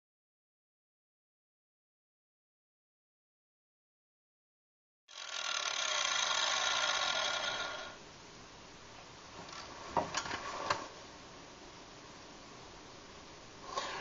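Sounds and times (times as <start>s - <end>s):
angle grinder grinding metal: 5.1s - 8.0s.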